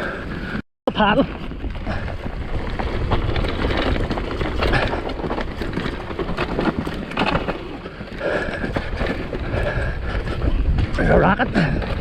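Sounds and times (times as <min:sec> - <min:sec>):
bike tyres and frame clattering: 0:00.2 - 0:12.0
wind on microphone: 0:01.2 - 0:05.1, 0:08.2 - 0:12.0.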